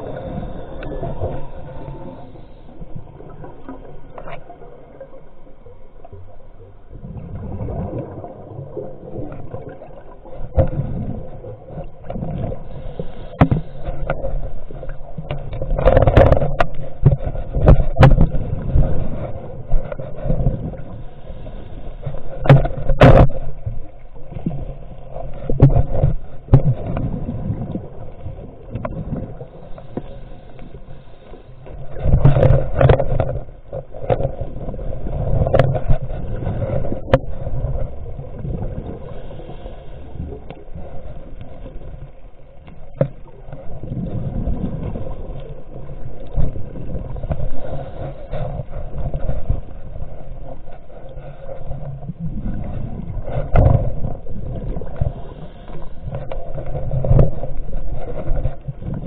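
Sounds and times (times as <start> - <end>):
muffled underwater rumble: 0.0 - 59.0
knocks and scrapes: 11.7 - 21.0, 21.9 - 23.8, 31.6 - 38.0, 46.2 - 59.0.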